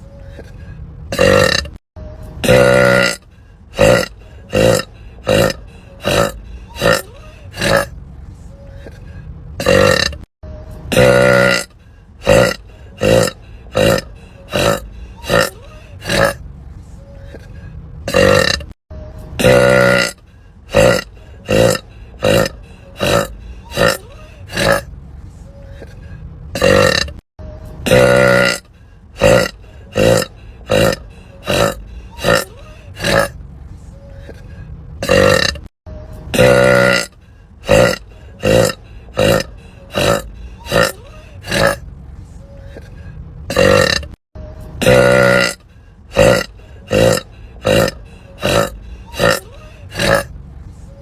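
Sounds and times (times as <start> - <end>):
woman burping: 1.1 - 1.8, 2.4 - 3.2, 3.8 - 7.9, 9.6 - 10.3, 10.9 - 16.4, 18.1 - 18.8, 19.4 - 24.9, 26.6 - 27.2, 27.8 - 28.6, 29.2 - 33.3, 35.0 - 35.7, 36.3 - 37.1, 37.7 - 41.8, 43.5 - 44.2, 44.8 - 45.6, 46.2 - 50.3.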